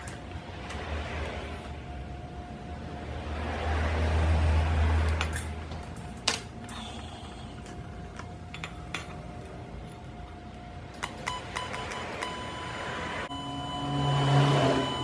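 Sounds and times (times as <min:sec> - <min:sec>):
low machine hum: 0:05.6 - 0:15.0.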